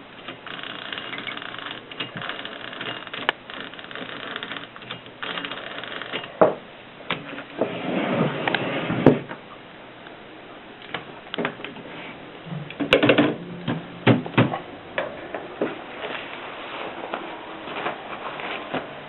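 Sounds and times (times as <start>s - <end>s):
typewriter clicking and clacking: 0.2s - 6.4s.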